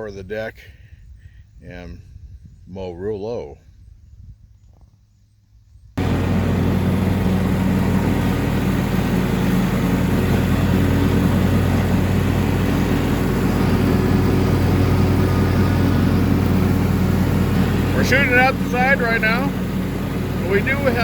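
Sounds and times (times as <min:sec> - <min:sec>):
riding mower engine running: 0:06.0 - 0:21.0.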